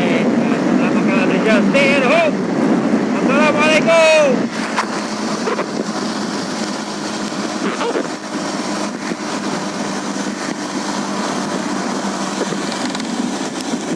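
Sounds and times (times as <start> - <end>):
wind and road noise: 0.0 - 13.9
small motorcycle engine running: 4.5 - 13.9.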